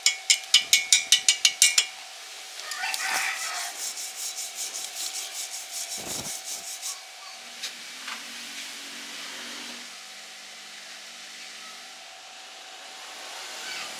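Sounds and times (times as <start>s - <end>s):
wire brush scrubbing metal: 0.0s - 7.2s.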